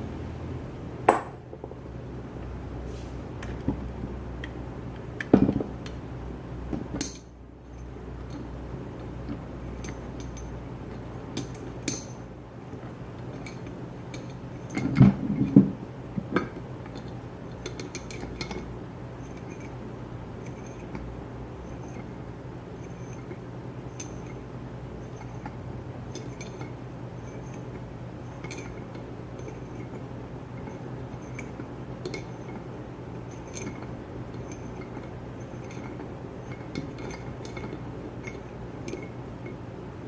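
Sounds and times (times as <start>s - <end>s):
metal vise parts clinking: 34.4s - 39.1s.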